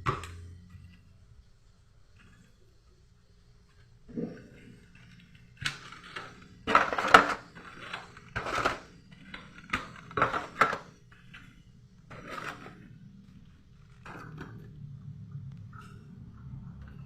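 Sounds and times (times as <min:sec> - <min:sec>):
containers clattering and knocking: 0:04.0 - 0:15.0.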